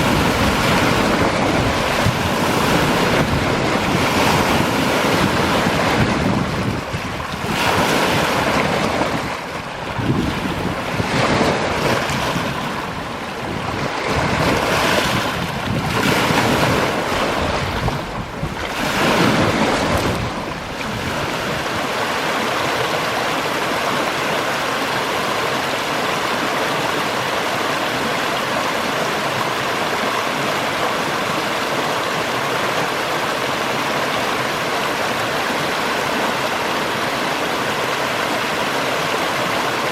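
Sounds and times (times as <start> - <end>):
wind buffeting microphone: 0.0 - 22.1
rush of flowing water: 0.0 - 39.9
waves washing onto beach: 0.0 - 39.9.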